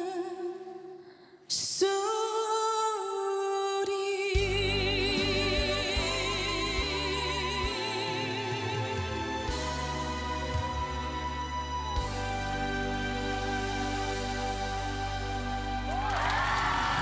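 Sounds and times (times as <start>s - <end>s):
person singing a slow ballad: 0.0s - 16.1s
musical accompaniment: 4.4s - 17.0s.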